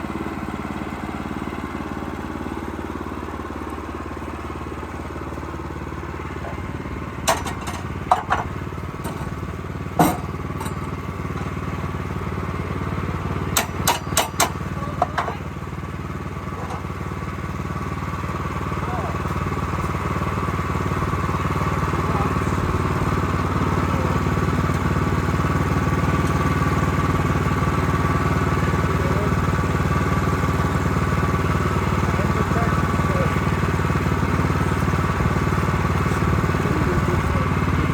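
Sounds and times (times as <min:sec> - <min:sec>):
portable sawmill engine running: 0:00.0 - 0:37.9
sharp knocks and clanks: 0:07.2 - 0:11.6, 0:13.5 - 0:15.4.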